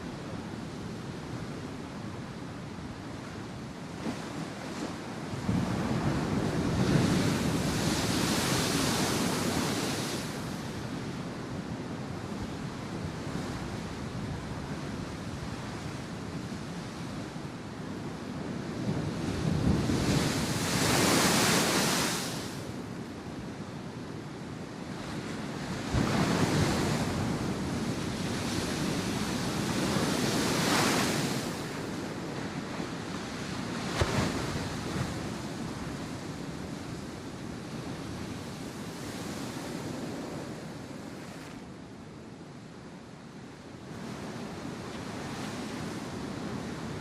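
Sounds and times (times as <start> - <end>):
ocean waves breaking: 19.4 - 22.8, 25.8 - 37.0.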